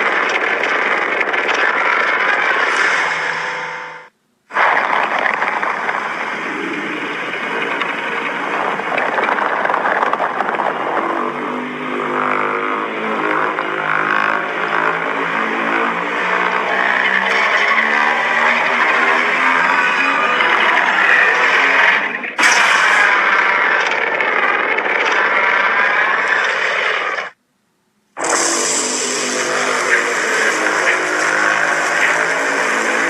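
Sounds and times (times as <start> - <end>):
rasping monster roar: 6.9 - 27.3, 28.2 - 33.0.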